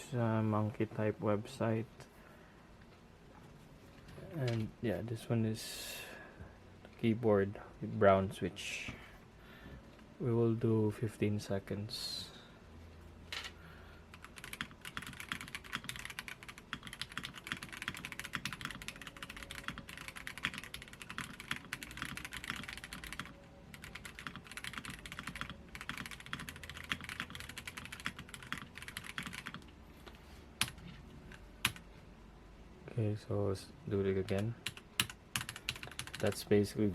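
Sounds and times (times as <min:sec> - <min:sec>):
fast mechanical keyboard typing: 0:14.1 - 0:29.7, 0:31.6 - 0:31.8, 0:34.3 - 0:36.5.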